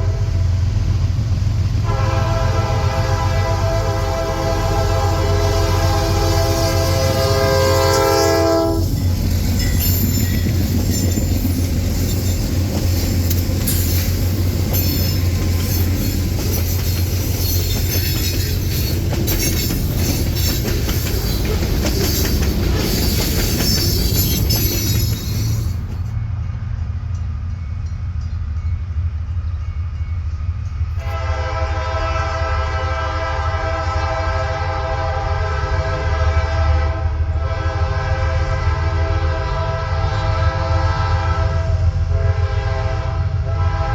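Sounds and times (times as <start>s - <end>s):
locomotive horn blast: 0.0s - 0.7s, 1.8s - 9.1s, 31.0s - 43.9s
train wheels clattering: 7.5s - 26.2s.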